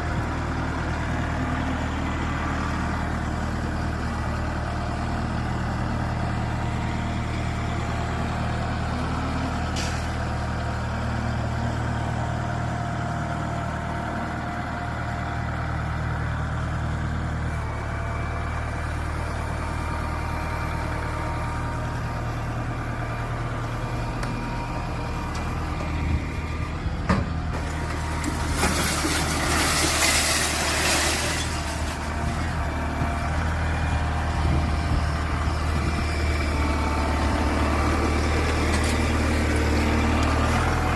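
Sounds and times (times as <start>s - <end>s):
heavy machinery engine running: 0.0s - 40.9s.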